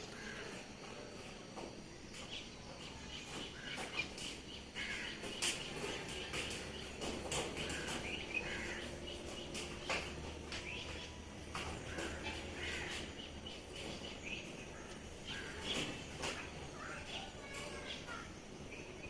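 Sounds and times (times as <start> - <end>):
birds chirping: 0.0 - 19.0
sharp clicks and knocks: 5.2 - 8.3.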